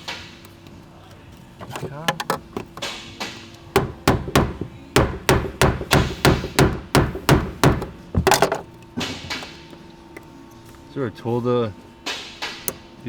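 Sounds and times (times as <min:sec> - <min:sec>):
hammer tapping on screwdriver: 0:03.8 - 0:08.4.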